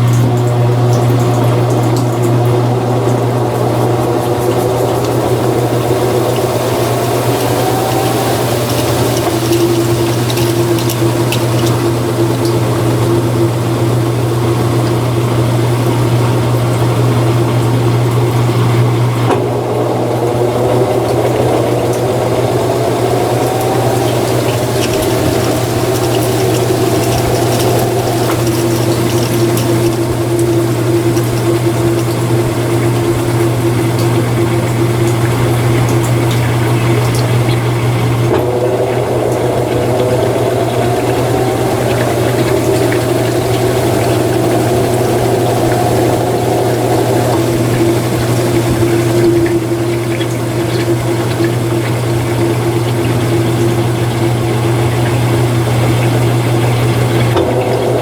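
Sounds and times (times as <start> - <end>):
water being pumped out: 0.0 - 17.4, 19.2 - 58.0
washing machine drain pump: 0.0 - 58.0
rising tone: 2.3 - 12.4, 19.3 - 31.3, 38.3 - 49.5.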